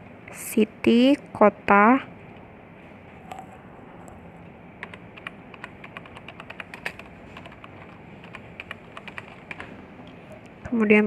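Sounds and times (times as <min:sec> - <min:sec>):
computer keyboard typing: 0:04.8 - 0:09.7.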